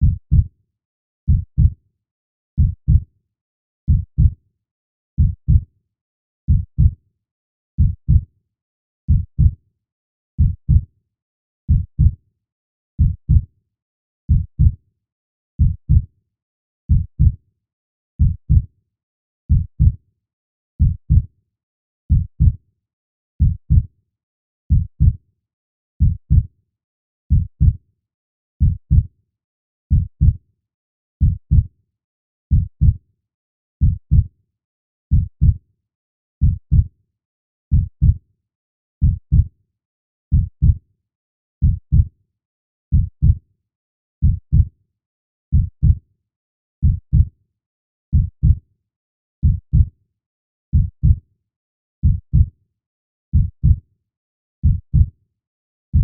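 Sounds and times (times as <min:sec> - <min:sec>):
heartbeat double thump: 0:53.3 - 0:53.8.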